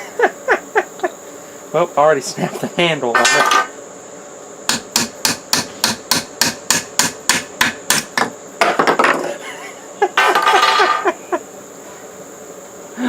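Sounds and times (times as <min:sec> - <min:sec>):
hammer hitting nail into wood: 0:04.7 - 0:09.1.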